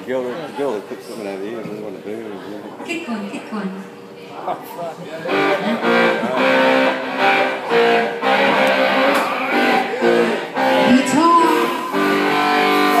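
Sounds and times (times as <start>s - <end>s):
guitar strumming chords: 5.2s - 13.0s
live band music: 5.2s - 13.0s.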